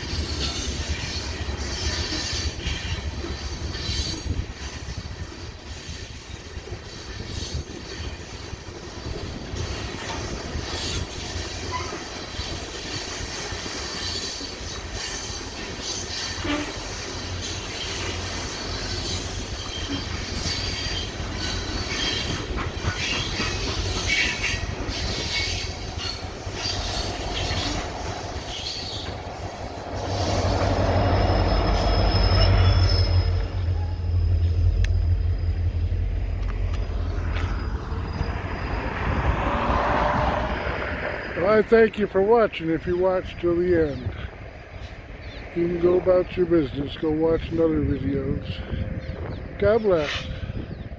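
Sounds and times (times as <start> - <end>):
high wheel squeal: 0.0 - 41.3
train wheels clattering over rails: 6.4 - 41.4.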